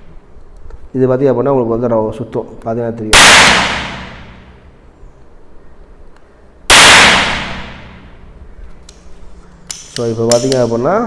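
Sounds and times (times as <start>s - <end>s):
toy cap gun bangs: 9.7s - 10.8s.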